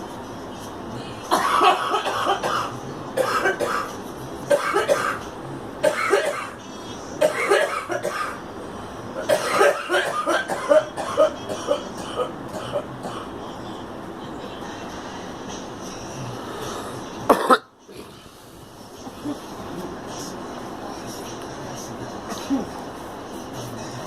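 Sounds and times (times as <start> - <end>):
girl coughing: 1.3 - 3.9, 4.5 - 5.2, 5.8 - 6.6, 7.2 - 8.4, 9.2 - 13.3, 17.3 - 17.7.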